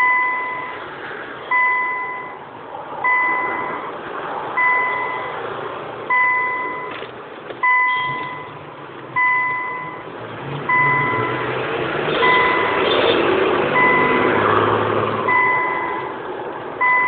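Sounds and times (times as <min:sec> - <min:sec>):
electronic beeper beeping: 0:07.6 - 0:08.6, 0:12.2 - 0:12.8, 0:13.8 - 0:14.3.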